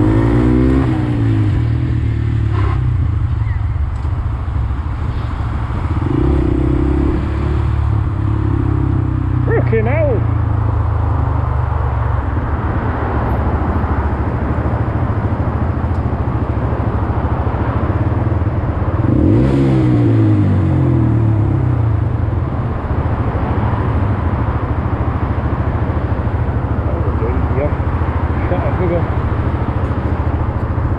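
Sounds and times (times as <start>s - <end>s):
motorcycle engine running: 0.0s - 4.9s, 24.0s - 30.9s
road noise: 0.0s - 30.9s.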